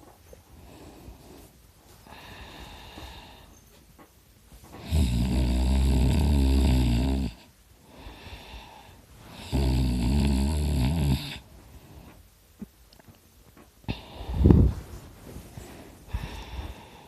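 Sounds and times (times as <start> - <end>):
quiet breathing: 0.0 - 12.8, 13.6 - 17.0
person snoring loudly: 4.8 - 8.3, 9.3 - 11.4.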